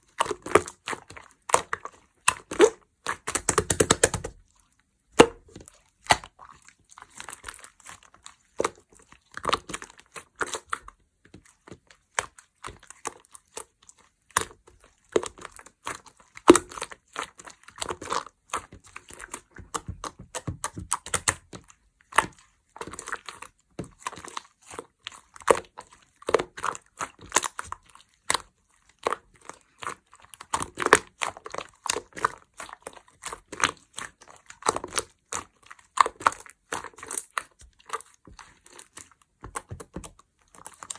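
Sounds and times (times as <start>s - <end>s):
slime squishing with pops: 0.0s - 40.9s.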